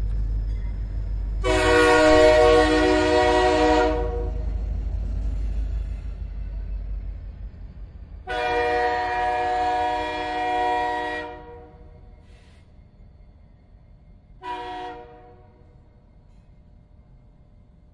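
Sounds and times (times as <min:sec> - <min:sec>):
low rumble of train: 0:00.0 - 0:17.9
train horn blasts: 0:01.4 - 0:04.6, 0:08.2 - 0:12.0, 0:14.4 - 0:15.8.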